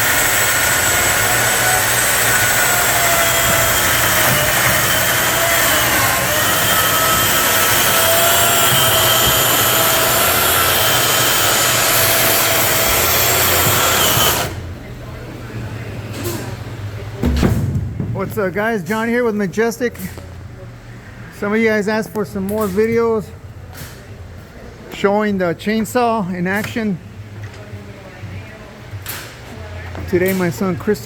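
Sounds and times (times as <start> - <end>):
chainsaw cutting wood: 0.0 - 14.5.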